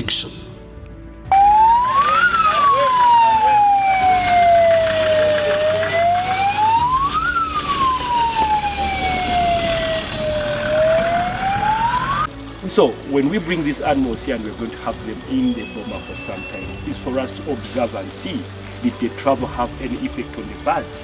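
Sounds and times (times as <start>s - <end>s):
wailing siren: 1.3s - 12.3s.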